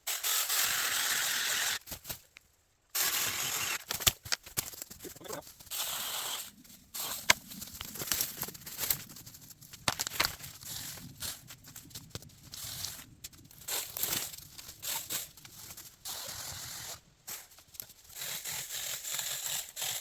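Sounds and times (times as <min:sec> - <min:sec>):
mini chainsaw cutting wood: 0:00.0 - 0:01.8, 0:03.0 - 0:03.9, 0:18.2 - 0:20.0
wood and brush crackling: 0:01.8 - 0:19.8.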